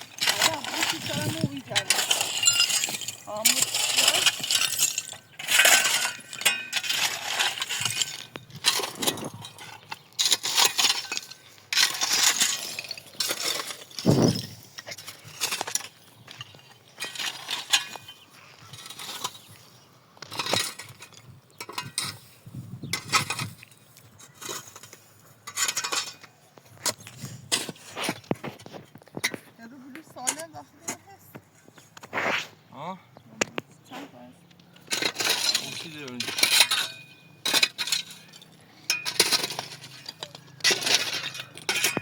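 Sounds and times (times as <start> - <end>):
small hard objects clinking: 0.0 - 19.6, 34.7 - 42.0.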